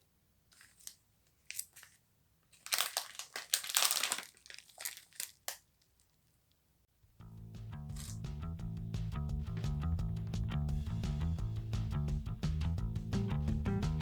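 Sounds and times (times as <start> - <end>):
crinkling and rustling: 0.0 - 6.6, 7.9 - 8.2.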